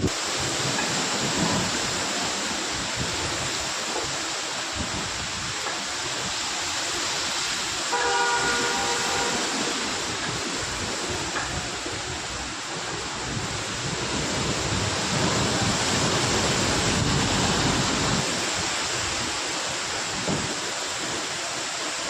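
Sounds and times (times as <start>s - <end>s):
heavy rain and strong wind: 0.0s - 22.0s
horn sounding: 7.9s - 10.0s.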